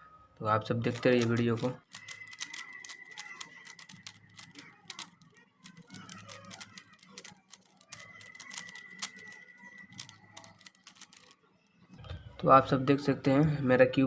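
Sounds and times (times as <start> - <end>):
plastic puzzle cube clicking: 0.8 - 11.4.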